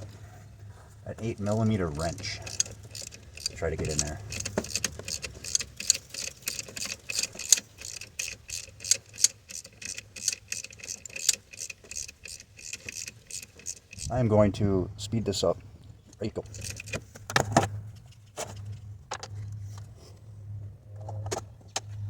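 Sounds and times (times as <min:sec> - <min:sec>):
hand ratchet clicking: 0:01.4 - 0:14.1, 0:16.5 - 0:17.0.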